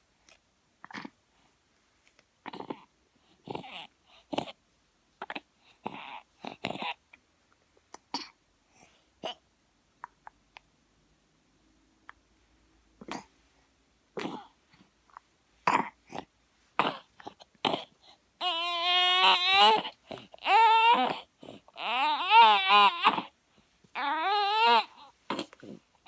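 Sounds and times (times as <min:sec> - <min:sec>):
baby coughing: 0:14.2 - 0:14.5, 0:15.6 - 0:17.9
baby crying: 0:18.4 - 0:23.3, 0:24.0 - 0:25.5.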